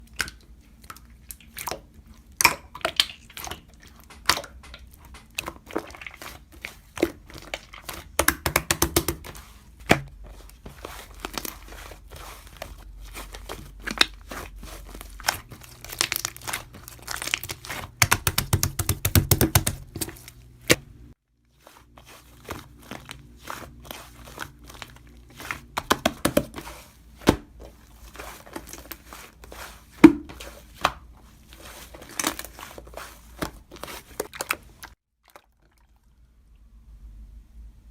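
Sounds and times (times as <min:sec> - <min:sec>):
paper or plastic crinkling: 0:09.1 - 0:20.8, 0:21.5 - 0:35.0.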